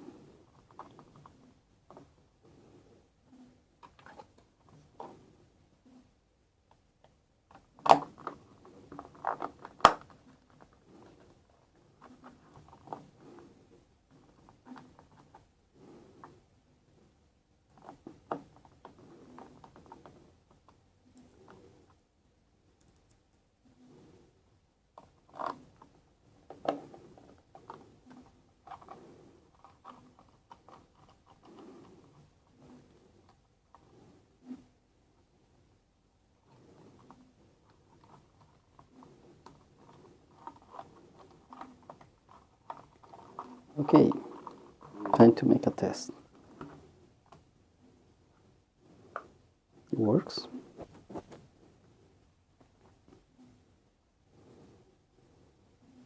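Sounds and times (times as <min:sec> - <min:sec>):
plastic case clicks and scrapes: 0:03.8 - 0:05.2, 0:07.5 - 0:13.5, 0:36.5 - 0:45.3.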